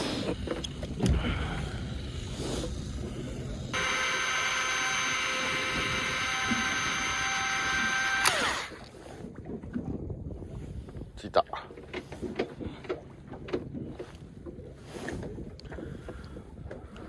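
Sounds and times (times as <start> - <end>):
electric fishing reel whining: 3.6 - 8.9.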